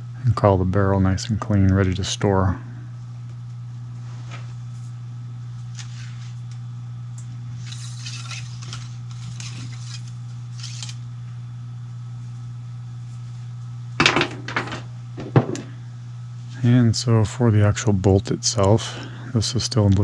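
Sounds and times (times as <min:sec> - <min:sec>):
steady low hum: 0:00.0 - 0:20.0
cleaning rod scraping in barrel: 0:07.6 - 0:10.9.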